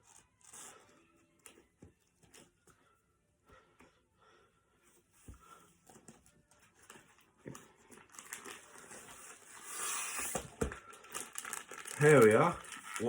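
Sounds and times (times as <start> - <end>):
wrapping paper rustling: 6.4 - 13.0.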